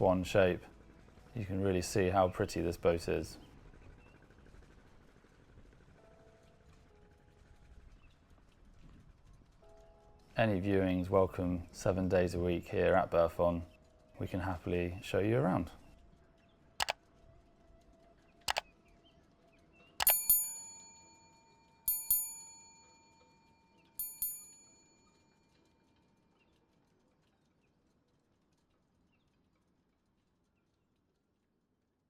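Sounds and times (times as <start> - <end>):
small metal bell ringing: 20.0 - 25.2.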